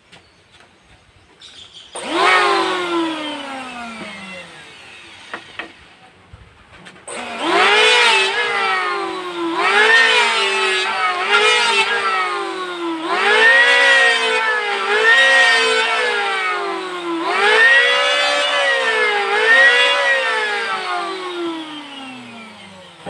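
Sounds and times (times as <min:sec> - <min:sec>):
electric hand planer whining: 0:01.9 - 0:06.2, 0:07.0 - 0:23.0.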